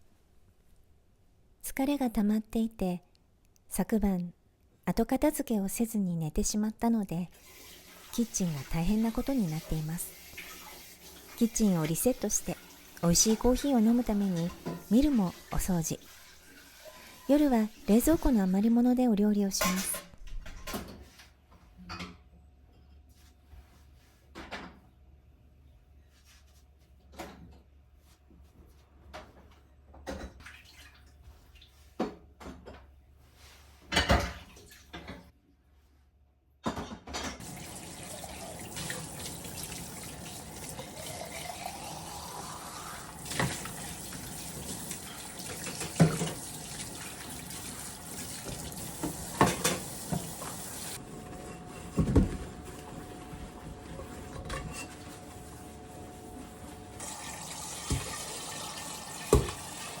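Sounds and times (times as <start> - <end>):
kitchen tap running into sink: 7.4 - 18.6, 37.4 - 55.7, 57.0 - 60.0
vessel filling with water: 7.4 - 18.6, 37.4 - 60.0
dishes knocking and clinking: 33.9 - 35.2, 49.0 - 50.5.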